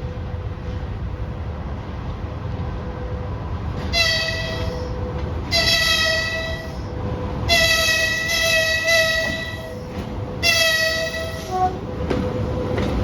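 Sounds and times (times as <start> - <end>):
freight train rumble: 0.0 - 13.0
locomotive horn blasts: 3.8 - 11.9.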